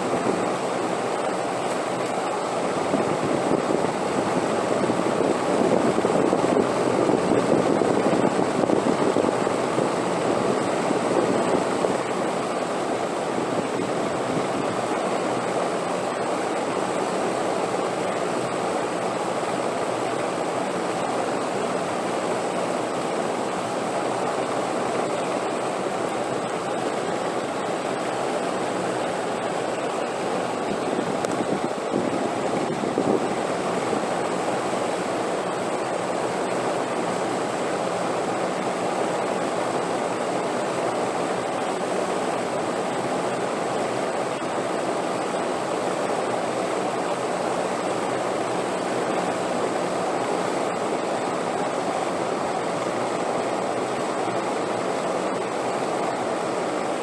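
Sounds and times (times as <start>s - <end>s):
steady wind rushing: 25.4s - 38.4s.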